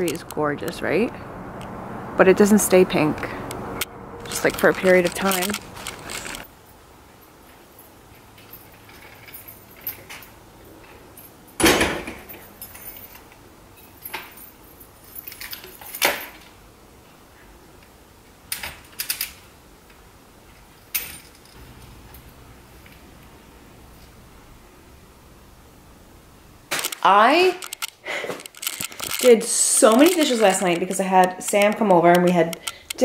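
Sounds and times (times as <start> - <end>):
sharp clicks and knocks: 26.7 - 33.0.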